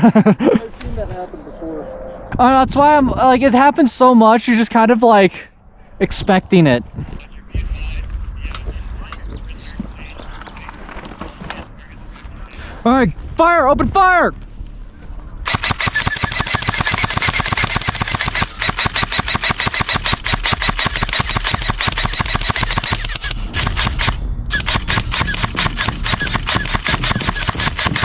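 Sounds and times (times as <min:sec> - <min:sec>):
airsoft rifles firing full-auto: 0:15.4 - 0:28.0.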